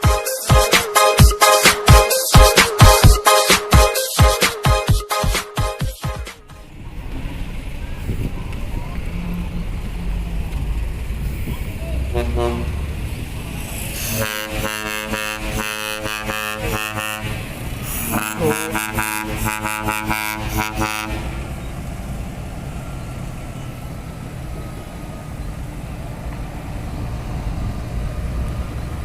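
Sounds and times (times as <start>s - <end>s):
truck air horns playing a tune: 0.0s - 6.6s, 12.0s - 12.9s, 13.8s - 21.6s.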